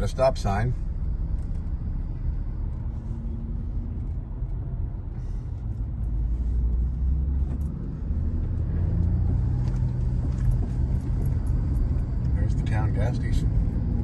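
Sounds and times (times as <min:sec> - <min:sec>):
vehicle rumble inside cabin: 0:00.0 - 0:14.0.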